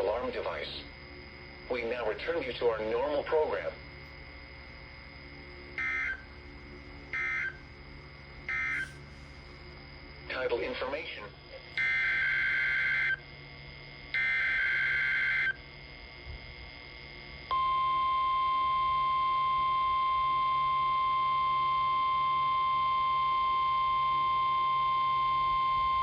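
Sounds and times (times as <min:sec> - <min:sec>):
buzzy digital data tones: 0:00.0 - 0:26.0
steady warning alarm tone: 0:00.0 - 0:26.0.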